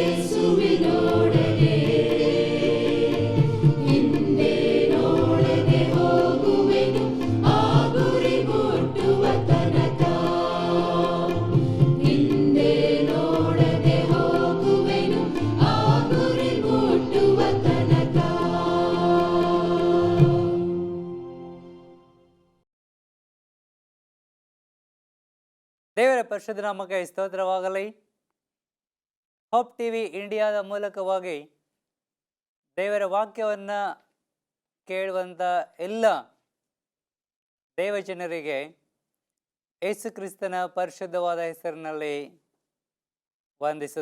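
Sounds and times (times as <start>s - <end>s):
instrumental accompaniment with beat: 0.0s - 21.5s
choir singing: 0.0s - 22.1s.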